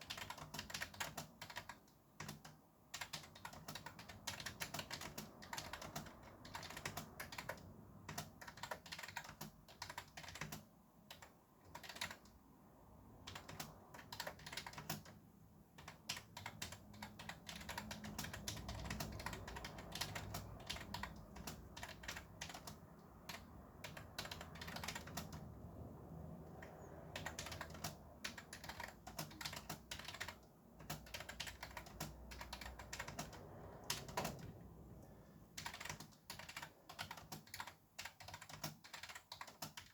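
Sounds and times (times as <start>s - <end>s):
fast typing on keyboard: 0.0s - 39.9s
low traffic rumble: 16.7s - 35.9s.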